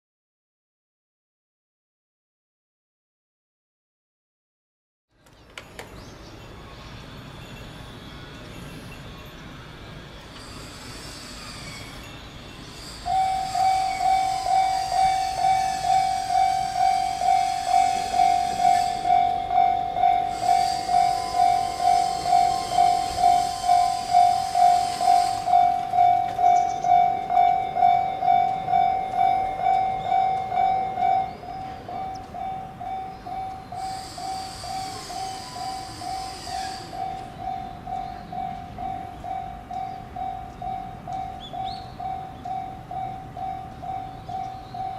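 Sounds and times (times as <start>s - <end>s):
level crossing bell clanging: 11.9s - 44.9s.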